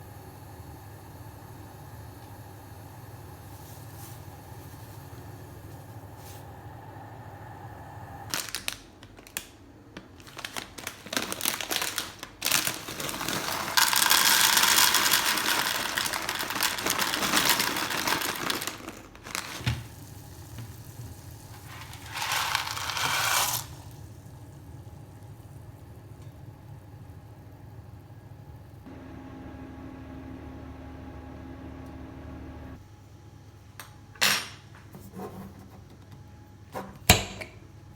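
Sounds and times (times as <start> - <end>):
packaging crinkling and rustling: 8.3 - 24.0.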